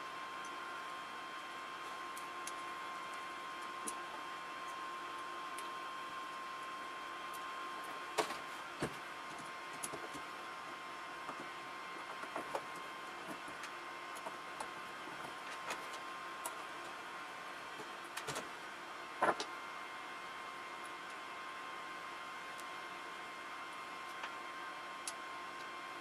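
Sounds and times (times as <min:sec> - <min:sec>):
faint high hum: 0:00.0 - 0:26.0.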